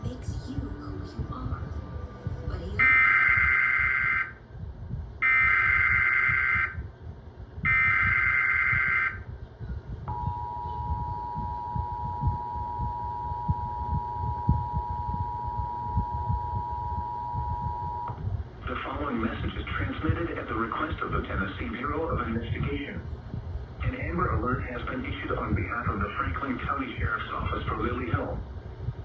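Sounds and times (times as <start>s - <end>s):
two-tone attention signal: 10.1s - 18.1s.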